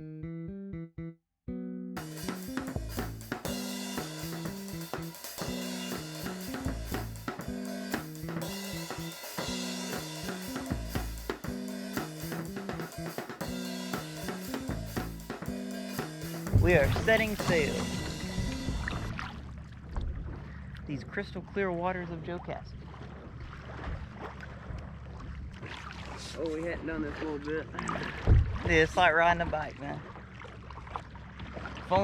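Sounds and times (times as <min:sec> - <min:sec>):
repeating bass line: 0:00.0 - 0:19.5
rock drum kit: 0:02.0 - 0:19.2.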